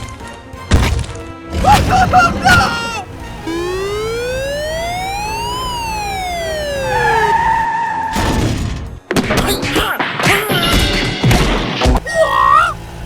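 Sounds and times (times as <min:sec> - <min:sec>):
siren wail: 0:01.9 - 0:08.2.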